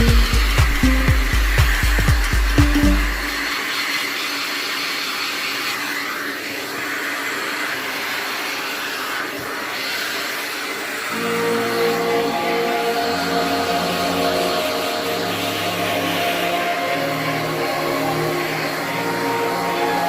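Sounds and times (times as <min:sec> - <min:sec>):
small electric motor whirring: 0:00.0 - 0:20.0.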